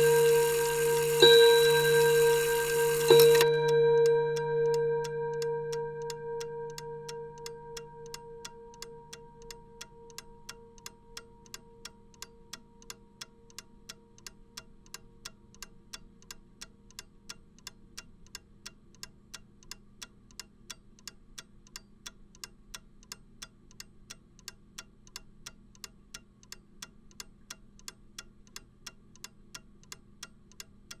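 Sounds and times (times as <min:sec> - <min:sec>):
ringing clock strike tone: 0:00.0 - 0:10.2
clock ticking: 0:00.0 - 0:31.0.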